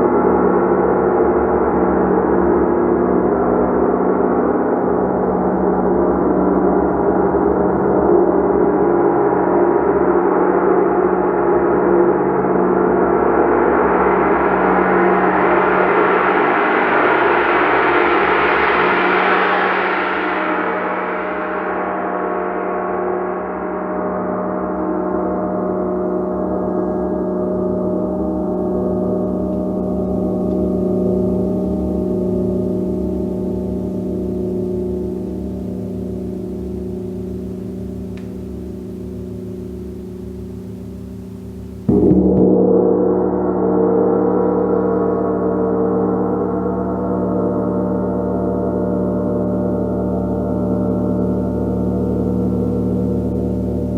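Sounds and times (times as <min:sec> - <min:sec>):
steady low hum: 0:27.6 - 0:53.9
gong ringing: 0:29.2 - 0:53.9.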